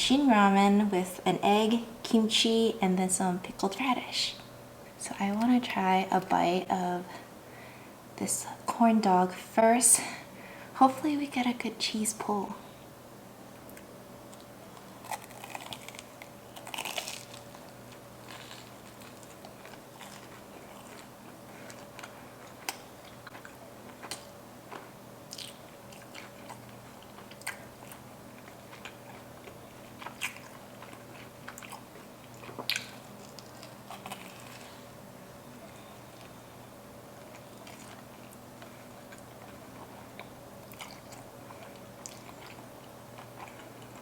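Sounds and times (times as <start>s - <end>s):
crunchy biting and chewing: 14.3s - 35.0s, 37.2s - 44.0s.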